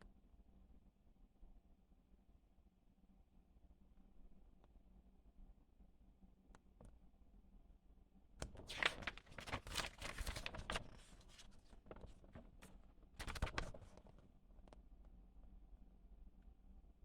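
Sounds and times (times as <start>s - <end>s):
paper and packaging rustling: 8.4s - 14.1s.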